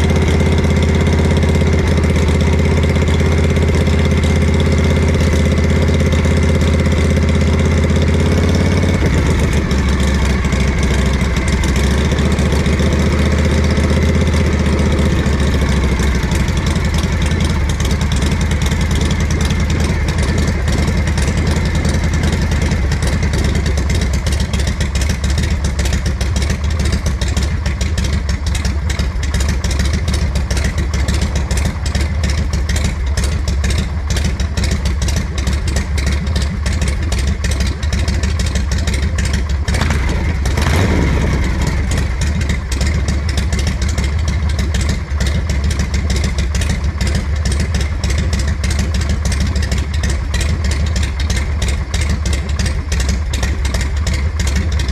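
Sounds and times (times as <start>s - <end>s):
motorcycle engine idling: 0.0s - 54.9s.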